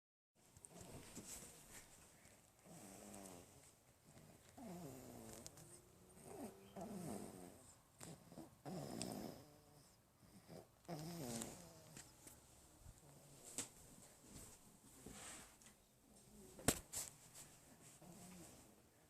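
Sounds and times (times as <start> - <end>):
baby snoring faintly: 2.6 - 12.2.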